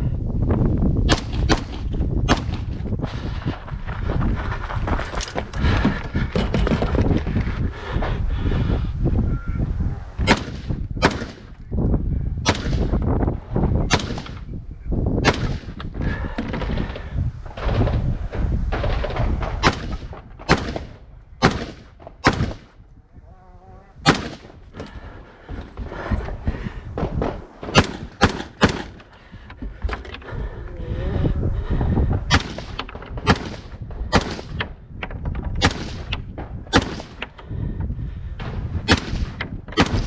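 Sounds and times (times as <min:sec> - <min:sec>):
steady rustling: 0:02.7 - 0:09.1, 0:23.9 - 0:39.8
rifle shots: 0:10.2 - 0:11.6, 0:12.4 - 0:13.0, 0:13.8 - 0:14.5, 0:15.2 - 0:15.8, 0:18.8 - 0:22.8, 0:24.0 - 0:25.0, 0:27.2 - 0:29.1, 0:32.3 - 0:34.8, 0:35.6 - 0:37.3, 0:38.8 - 0:40.0.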